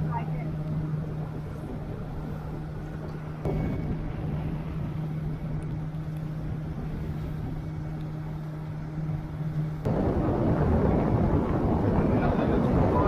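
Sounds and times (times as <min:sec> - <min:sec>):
boat engine droning: 0:00.0 - 0:13.0
loud rushing noise: 0:09.9 - 0:13.0.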